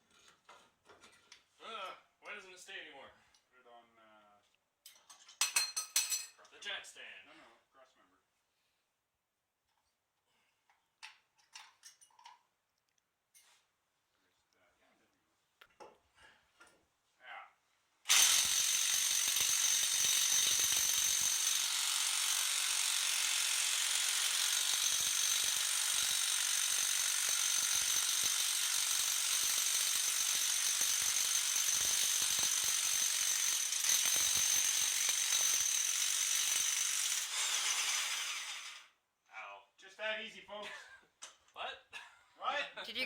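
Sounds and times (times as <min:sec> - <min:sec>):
impact wrench hammering: 0:22.6 - 0:35.8.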